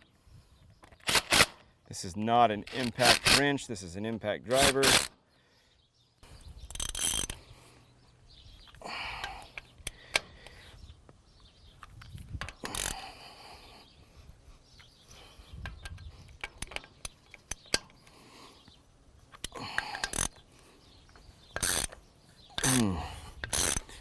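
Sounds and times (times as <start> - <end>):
tool ratcheting: 2.6 - 3.5, 4.5 - 5.1, 6.6 - 7.4, 11.9 - 13.0, 15.6 - 18.0, 19.3 - 20.4, 21.5 - 22.8, 23.4 - 24.0
metal clicks: 8.6 - 10.6, 11.7 - 13.0, 15.6 - 22.8.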